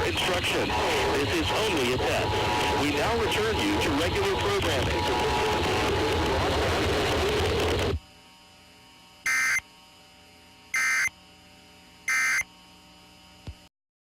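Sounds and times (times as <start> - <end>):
loud noisy background: 0.0 - 8.0
high digital data tones: 9.2 - 9.6, 10.7 - 11.1, 12.1 - 12.5.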